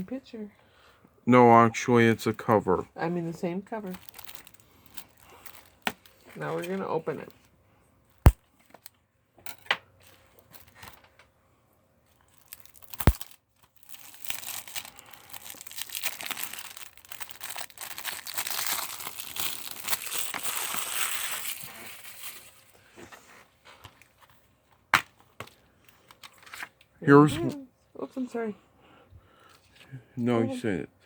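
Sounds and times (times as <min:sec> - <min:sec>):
plastic shrink-wrap crackling: 0:03.8 - 0:06.8, 0:12.2 - 0:22.7.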